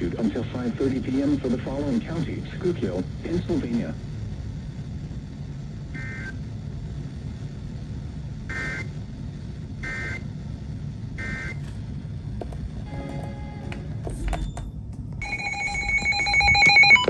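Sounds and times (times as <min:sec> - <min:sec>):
radio static: 0:00.0 - 0:04.1, 0:15.2 - 0:17.0
faint steady tones: 0:12.8 - 0:17.0
buzzy two-tone data warbles: 0:15.2 - 0:17.0.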